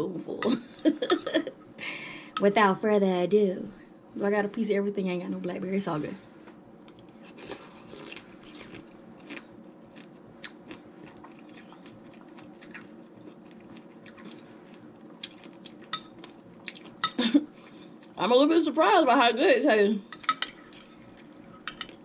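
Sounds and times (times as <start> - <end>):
faint steady hum: 0.0 - 22.0
chewing with wet clicks and crunches: 6.8 - 18.2.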